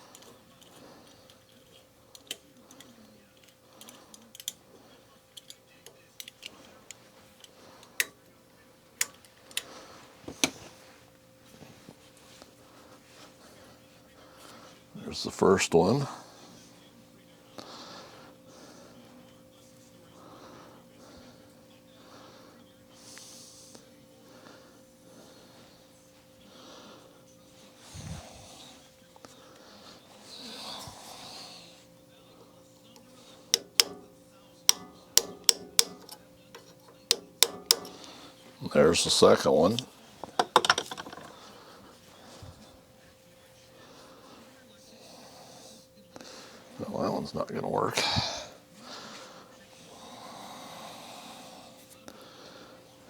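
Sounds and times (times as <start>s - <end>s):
faint steady hum: 0.0s - 53.0s
small metal clicks and taps: 1.5s - 4.6s, 5.4s - 6.6s, 33.5s - 34.1s, 34.7s - 38.1s, 40.2s - 41.3s
man breathing through nose: 48.0s - 52.9s.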